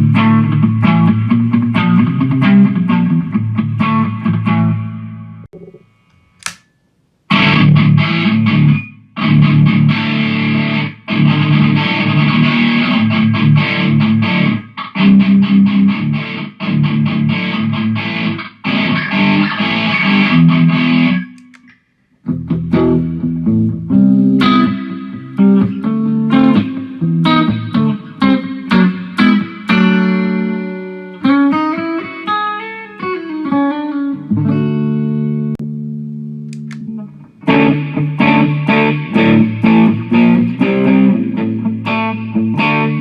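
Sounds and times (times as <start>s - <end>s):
short click: 5.6s - 6.8s, 36.5s - 36.9s
distorted electric guitar riffing: 7.3s - 21.4s, 22.3s - 43.0s.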